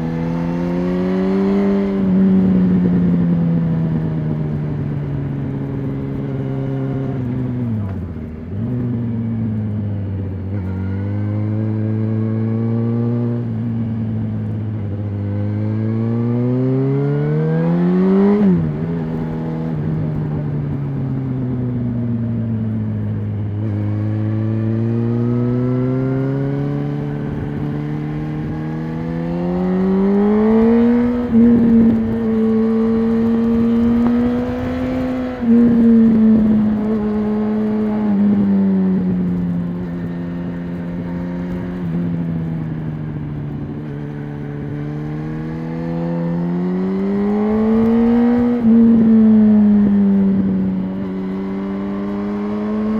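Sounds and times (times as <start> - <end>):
motorcycle engine revving: 0.0 - 21.0, 23.0 - 52.9.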